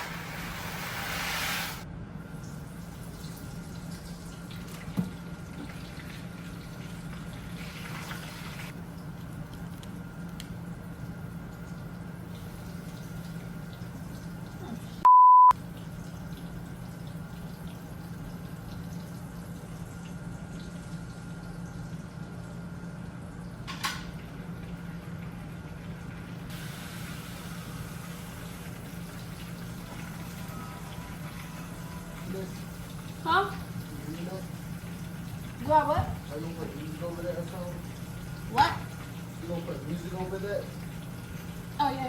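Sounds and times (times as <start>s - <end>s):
censor bleep: 15.1s - 15.5s.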